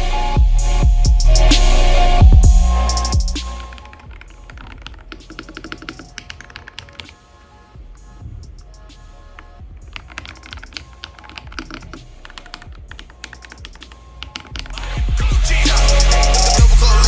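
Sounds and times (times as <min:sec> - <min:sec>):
background music: 0:00.0 - 0:17.0
mechanical keyboard typing: 0:03.5 - 0:07.2, 0:09.8 - 0:15.0.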